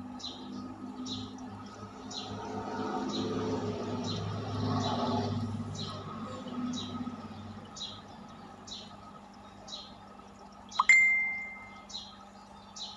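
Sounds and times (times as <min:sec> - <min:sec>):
sharp ringing clink: 0:10.8 - 0:11.7
short high chirp: 0:10.8 - 0:11.8.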